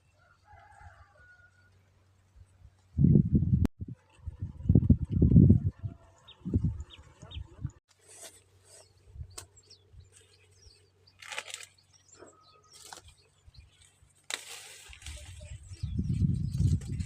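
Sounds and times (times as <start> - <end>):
rustling of dry plants: 7.9 - 17.0.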